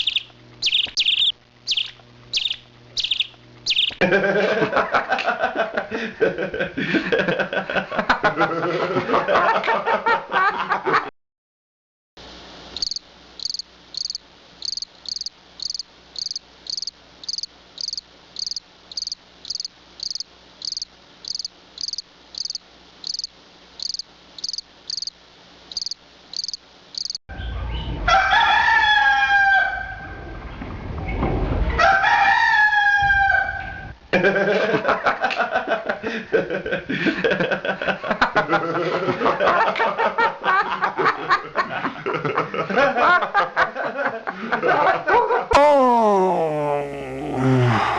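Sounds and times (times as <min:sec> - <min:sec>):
insect chirping: 0:00.0 - 0:04.0, 0:12.7 - 0:27.2
rooster crowing: 0:27.8 - 0:30.2, 0:31.8 - 0:33.9.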